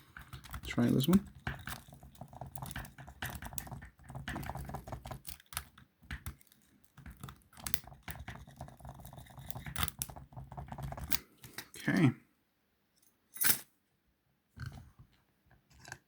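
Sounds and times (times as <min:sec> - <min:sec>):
key clicking and rattling in lock: 0:00.0 - 0:11.2.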